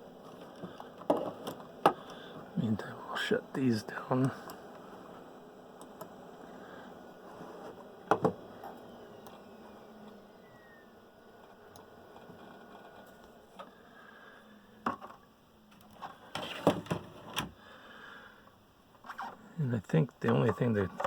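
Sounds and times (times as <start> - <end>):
faint falling whine: 0.0 - 16.5
low hiss: 0.0 - 21.0.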